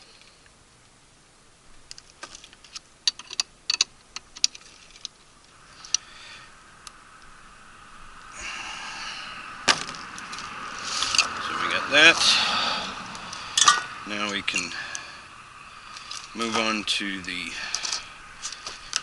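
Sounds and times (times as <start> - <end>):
rustling: 1.6 - 7.4, 9.5 - 11.6, 12.2 - 19.0
small metal clicks and taps: 1.9 - 5.1.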